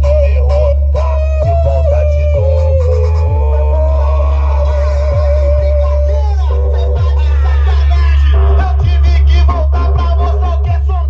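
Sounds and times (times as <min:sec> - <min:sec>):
loud electronic music with heavy bass: 0:00.0 - 0:11.0.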